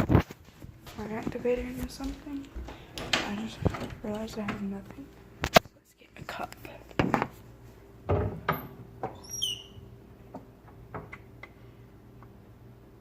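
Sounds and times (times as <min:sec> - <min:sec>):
high squeaky chirps: 0:09.1 - 0:09.9.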